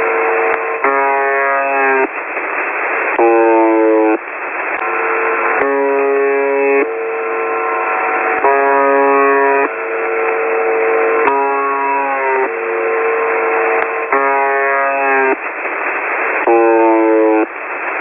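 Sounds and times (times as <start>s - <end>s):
radio static hiss: 0.0s - 18.0s
alternating alert tones: 13.8s - 15.4s.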